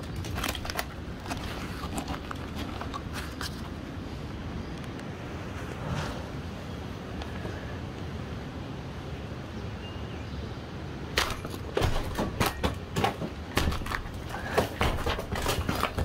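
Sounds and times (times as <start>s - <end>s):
wooden flooring cracking: 0.0s - 3.6s, 11.2s - 16.0s.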